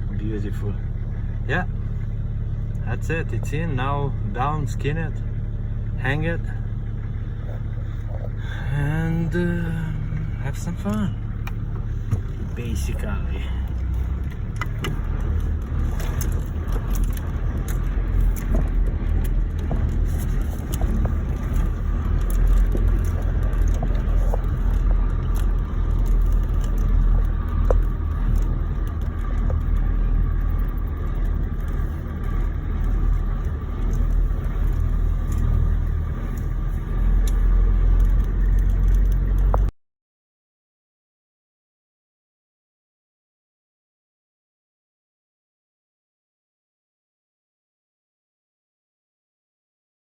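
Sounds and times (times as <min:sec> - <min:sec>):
vehicle engine and road rumble: 0:00.0 - 0:39.8
small clicks and rattles: 0:13.6 - 0:39.7.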